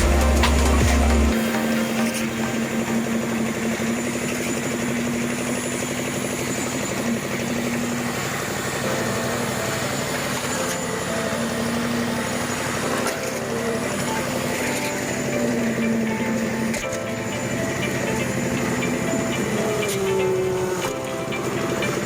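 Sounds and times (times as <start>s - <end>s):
engine running with mechanical rattle: 2.0s - 10.8s.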